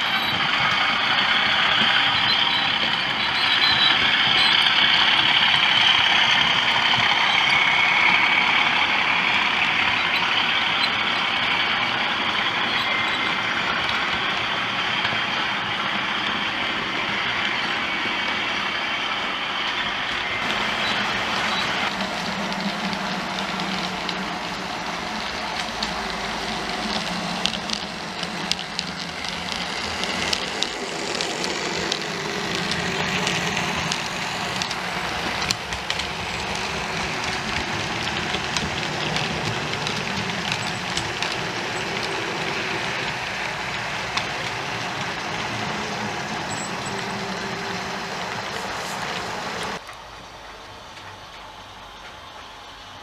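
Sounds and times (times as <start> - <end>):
wheels clicking on track: 0.0 - 53.0
locomotive engine sound from speaker: 18.7 - 53.0.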